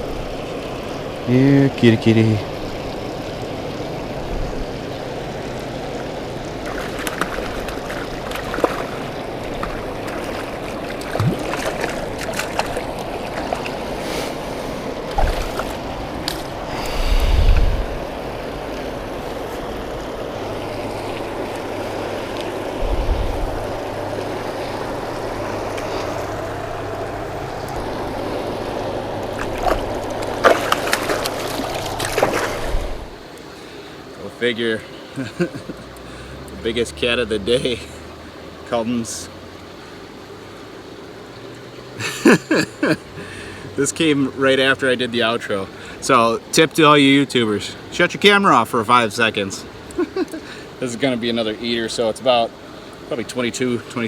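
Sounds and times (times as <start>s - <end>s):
water rushing through spillway: 0.0s - 54.0s
low thumps: 22.8s - 23.9s.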